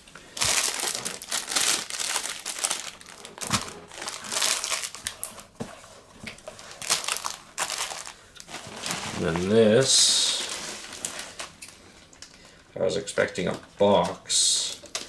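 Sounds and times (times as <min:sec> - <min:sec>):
plastic packaging crinkling: 0:00.2 - 0:05.6, 0:06.3 - 0:12.5.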